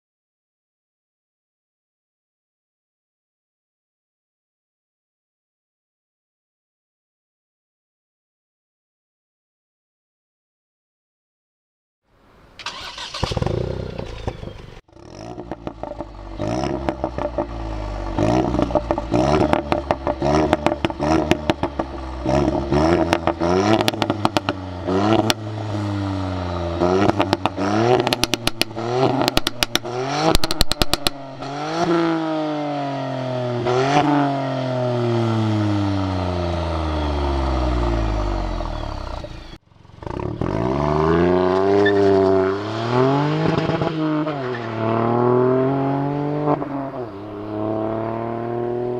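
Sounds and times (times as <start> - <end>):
car engine accelerating: 12.6 - 48.9
exhaust pops and crackles: 18.4 - 22.0, 27.0 - 31.5.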